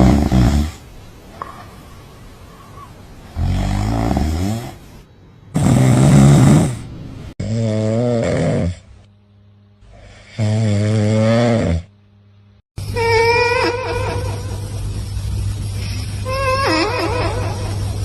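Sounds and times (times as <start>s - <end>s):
dog snoring loudly: 0.0s - 0.8s, 3.3s - 4.8s, 5.5s - 9.0s, 9.9s - 11.9s.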